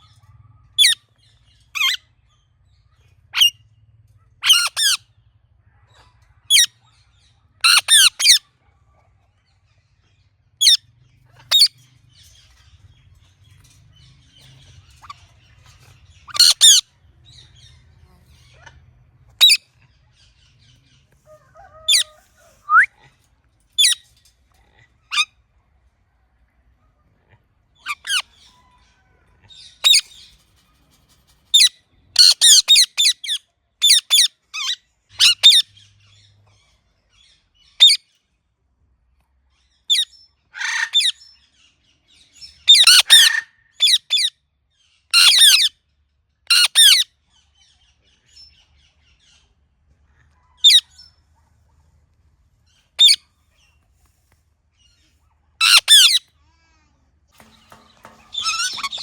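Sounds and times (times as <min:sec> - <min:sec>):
parrot squawking: 0:04.4 - 0:05.0, 0:16.3 - 0:16.8, 0:21.8 - 0:22.9, 0:31.6 - 0:35.6, 0:39.9 - 0:41.2, 0:42.7 - 0:44.3, 0:45.2 - 0:45.7, 0:53.0 - 0:53.2, 0:55.6 - 0:56.3, 0:57.6 - 0:59.0.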